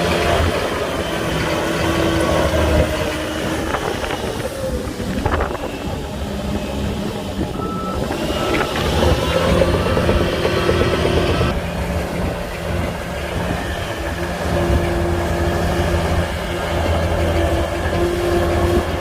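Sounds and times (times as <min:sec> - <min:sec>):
heavy diesel engines running: 0:00.0 - 0:19.0
reversing alarm beeping: 0:07.4 - 0:11.5.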